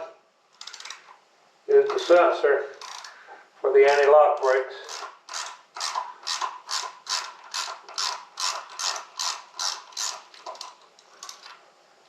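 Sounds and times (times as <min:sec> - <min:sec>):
ratchet wrench clicking: 0:00.6 - 0:01.0, 0:02.7 - 0:03.2, 0:03.9 - 0:11.6.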